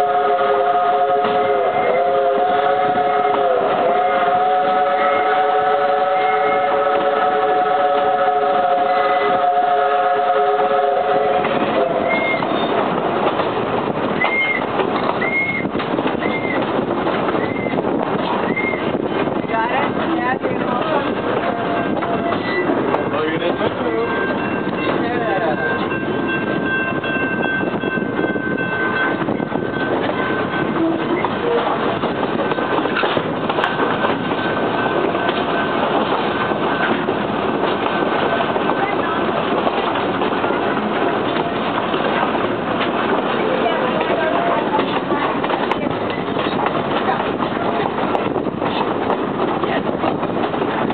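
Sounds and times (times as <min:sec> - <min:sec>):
train whistle chord: 0:00.0 - 0:12.4
passing train rumbling: 0:00.0 - 0:50.9.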